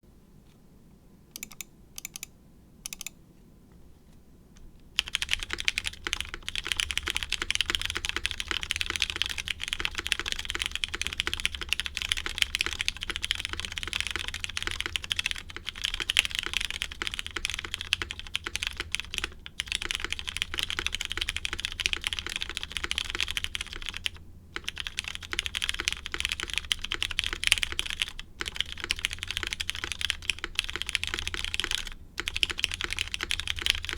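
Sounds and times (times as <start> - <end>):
mechanical keyboard typing: 1.3 - 2.3, 2.9 - 3.2, 5.0 - 33.9.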